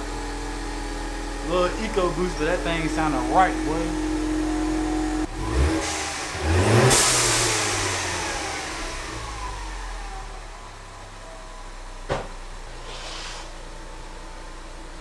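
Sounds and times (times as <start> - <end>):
car engine revving: 0.0 - 10.9.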